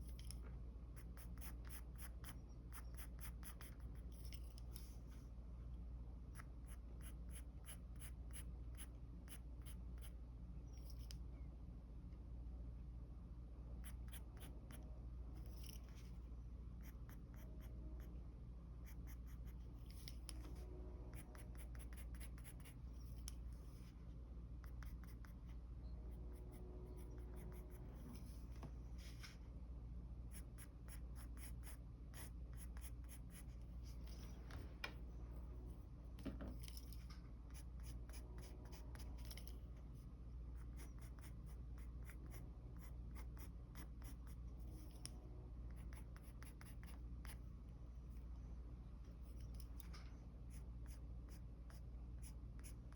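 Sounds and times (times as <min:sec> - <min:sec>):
pencil scratching on paper: 0:01.0 - 0:04.9, 0:18.8 - 0:23.7, 0:24.6 - 0:28.5, 0:30.3 - 0:34.2, 0:37.5 - 0:39.5, 0:40.6 - 0:45.0, 0:45.7 - 0:47.4
low hum: 0:10.3 - 0:30.9.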